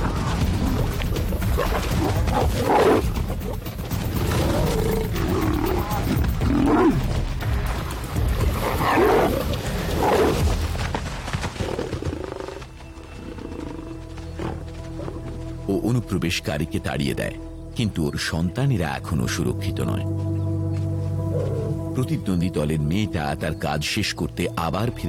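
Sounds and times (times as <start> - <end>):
lionesses snarling and roaring: 0.0 - 10.9, 11.5 - 15.4, 21.2 - 21.8
film music score: 0.0 - 25.0.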